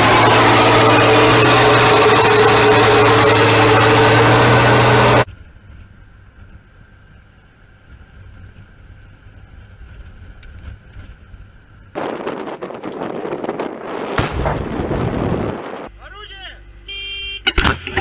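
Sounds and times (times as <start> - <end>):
thin whine: 0.0 - 5.3
loud engine running: 0.0 - 6.7.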